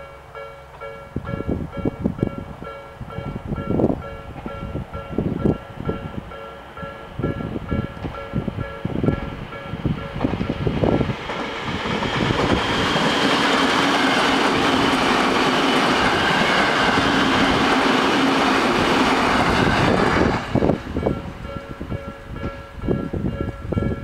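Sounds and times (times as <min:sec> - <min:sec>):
train rushing and rumbling: 0:00.0 - 0:24.0
train wheels clacking over joints: 0:09.0 - 0:22.6.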